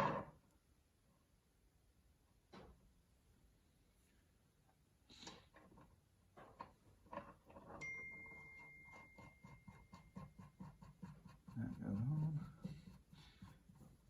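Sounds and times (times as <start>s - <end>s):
faint steady high tone: 7.7s - 10.1s.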